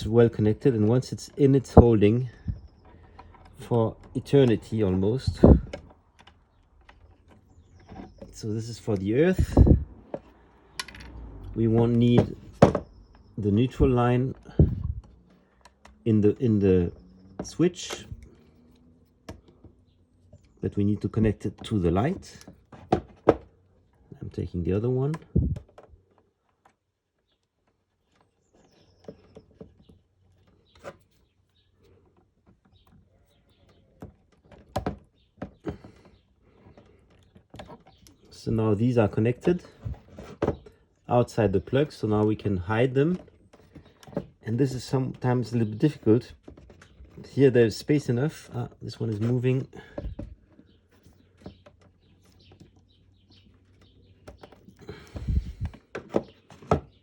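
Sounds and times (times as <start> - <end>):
wires rustling and clicking: 0.0 - 57.0
wires scraping and rubbing: 35.6 - 56.6.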